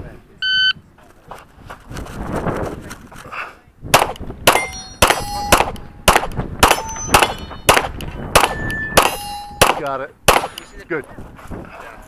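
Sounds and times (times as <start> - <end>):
pistol shots: 3.9 - 10.8
metallic ringing: 4.5 - 10.9.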